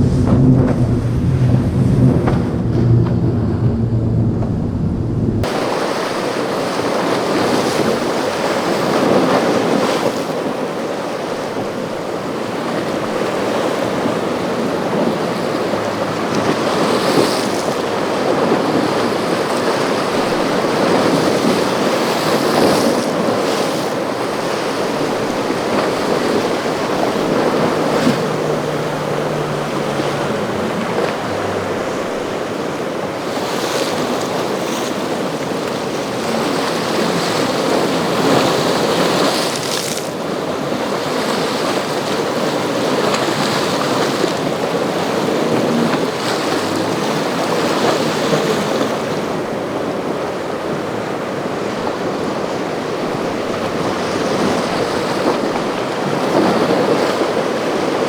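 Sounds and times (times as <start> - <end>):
wind buffeting microphone: 0.0 - 5.8, 24.2 - 41.3
surf and churning water: 0.0 - 58.0.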